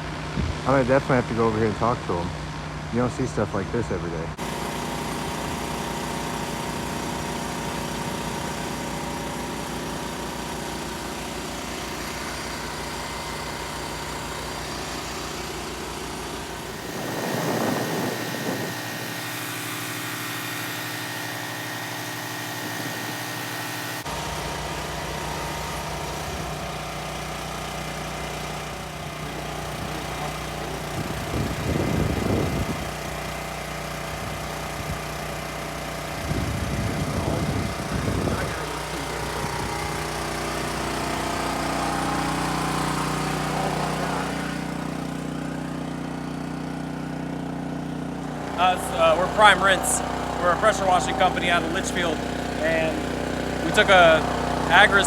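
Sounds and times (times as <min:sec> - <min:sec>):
drone engine hum: 0:04.1 - 0:27.0, 0:36.2 - 0:47.0, 0:48.1 - 0:55.0
rushing water spray: 0:04.4 - 0:26.5.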